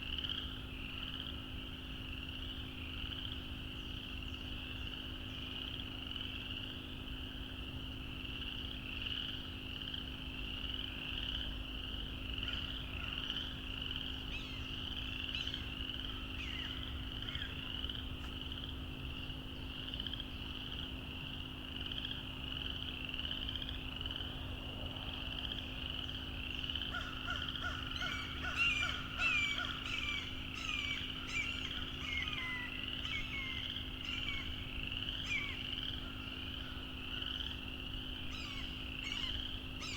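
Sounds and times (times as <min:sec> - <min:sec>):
frogs peeping: 0:25.2 - 0:39.9.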